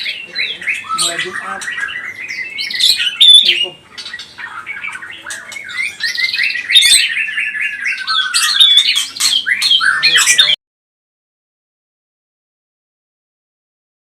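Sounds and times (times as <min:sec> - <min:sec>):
bird singing whistled notes: 0:00.0 - 0:10.6.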